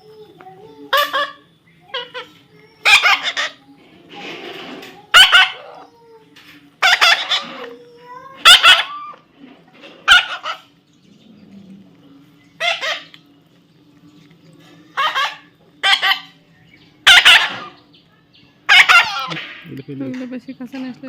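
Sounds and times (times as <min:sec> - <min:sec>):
parrot squawking: 0:00.9 - 0:06.2, 0:06.8 - 0:10.8, 0:12.6 - 0:13.3, 0:14.9 - 0:17.9, 0:18.6 - 0:19.6.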